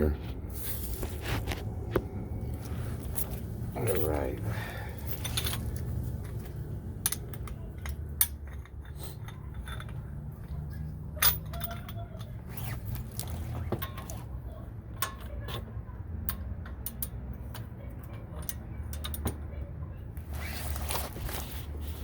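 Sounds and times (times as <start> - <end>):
low steady rumble: 0.0 - 12.0.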